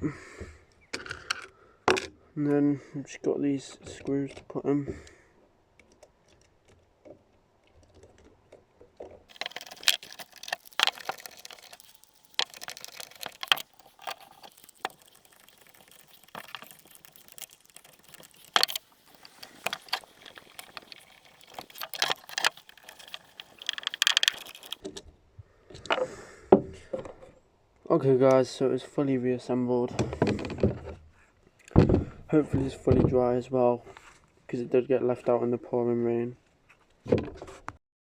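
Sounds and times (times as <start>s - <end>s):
small clicks and scraping: 0.7s - 2.2s, 5.8s - 25.1s
screwdriver turning screws: 9.3s - 24.8s.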